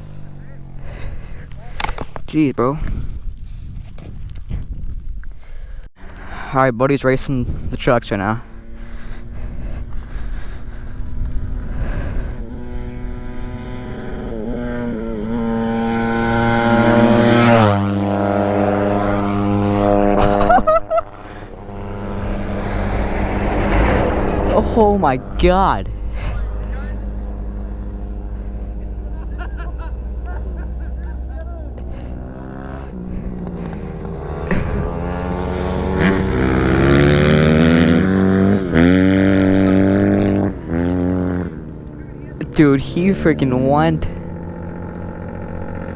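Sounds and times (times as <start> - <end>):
vehicle engine passing by: 0.0 - 2.0, 7.5 - 45.9.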